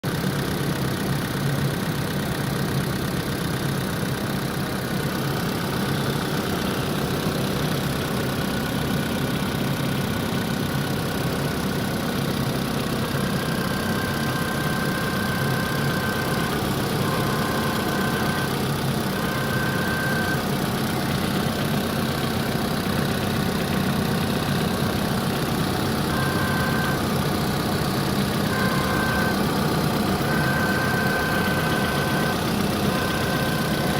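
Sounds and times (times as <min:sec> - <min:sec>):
car engine idling: 0:00.0 - 0:33.9
thin high whistle: 0:13.4 - 0:18.6, 0:28.4 - 0:29.6.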